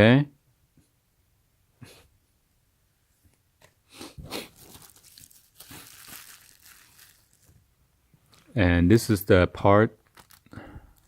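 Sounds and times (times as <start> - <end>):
plastic packaging crinkling: 4.3 - 7.7, 10.0 - 11.0.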